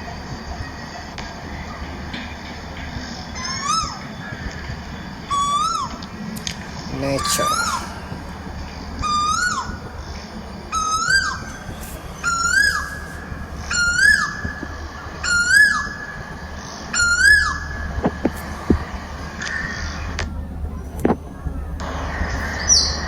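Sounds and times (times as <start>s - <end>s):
bird whistling call: 2.9s - 20.3s.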